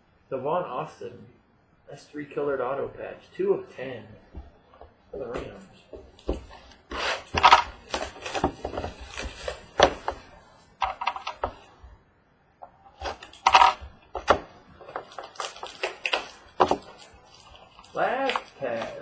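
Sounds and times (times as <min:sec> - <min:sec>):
trading cards being handled: 0:12.6 - 0:19.0.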